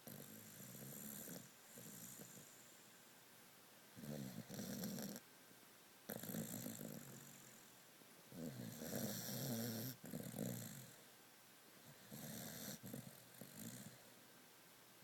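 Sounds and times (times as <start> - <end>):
pet snoring: 0.0 - 2.7, 4.0 - 5.2, 6.1 - 7.7, 8.3 - 11.0, 11.8 - 14.0.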